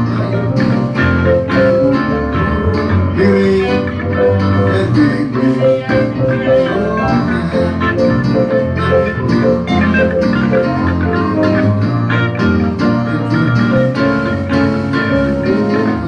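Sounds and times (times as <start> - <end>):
instrumental music with beat: 0.0 - 16.0.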